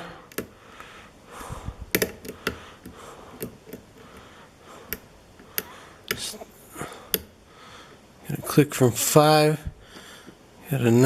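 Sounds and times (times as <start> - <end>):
lock pick clicking pins: 0.3 - 0.5, 1.9 - 4.2.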